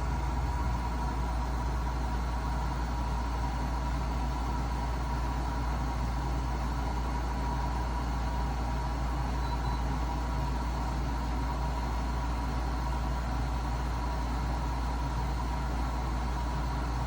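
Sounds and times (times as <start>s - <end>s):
air conditioner humming: 0.0s - 3.2s.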